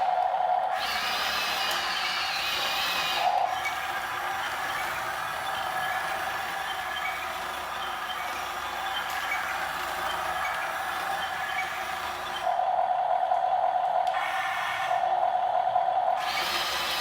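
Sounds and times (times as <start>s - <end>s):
small electric motors whining: 0.0s - 12.7s, 14.0s - 15.4s, 16.1s - 17.0s.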